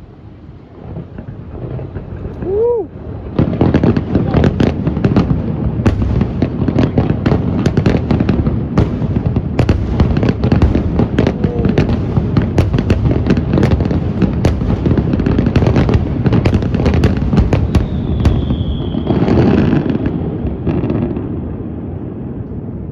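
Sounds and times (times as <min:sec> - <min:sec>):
fireworks bangs and crackles: 0:00.0 - 0:22.9
whistling firework shell: 0:16.4 - 0:20.2.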